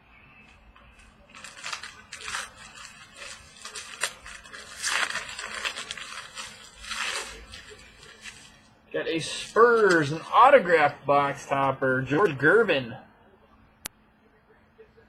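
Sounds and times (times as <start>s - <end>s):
plastic wrapping crinkling: 0.5s - 10.7s.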